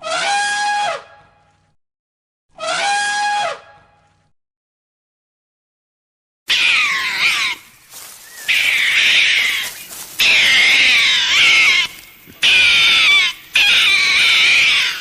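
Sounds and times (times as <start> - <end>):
animal crying high-pitched: 2.6 - 3.6, 6.5 - 15.0.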